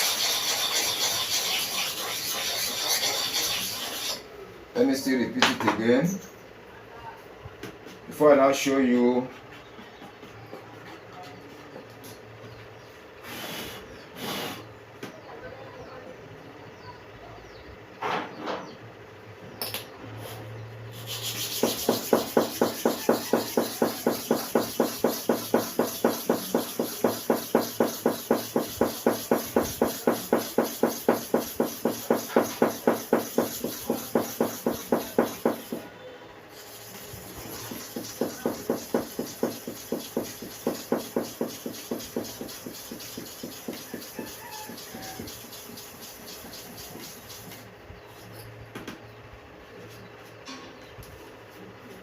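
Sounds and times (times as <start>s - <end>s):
blade rubbing on sharpening stone: 0.0s - 4.2s, 20.9s - 35.8s.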